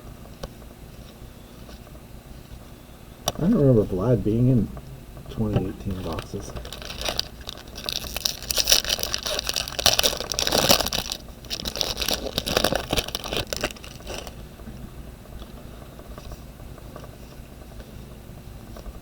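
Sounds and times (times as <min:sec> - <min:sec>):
cards scraping together: 0:05.8 - 0:07.8
wrapper crinkling: 0:05.8 - 0:14.4.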